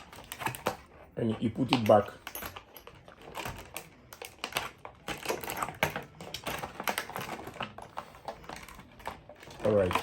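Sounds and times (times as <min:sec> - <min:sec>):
plastic parts clicking and rattling: 0:00.0 - 0:10.0.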